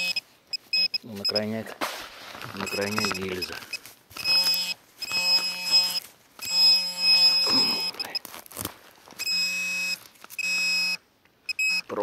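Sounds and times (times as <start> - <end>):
metal detector electronic tone: 0.0 - 1.6, 2.5 - 8.2, 9.2 - 12.0
scrape: 1.8 - 2.5.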